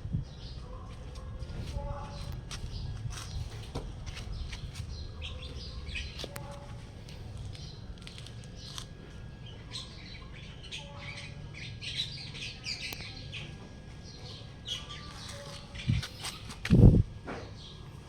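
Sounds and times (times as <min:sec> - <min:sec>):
steady low rumble: 0:00.0 - 0:10.8, 0:14.6 - 0:17.3
small birds chirping: 0:00.1 - 0:17.9.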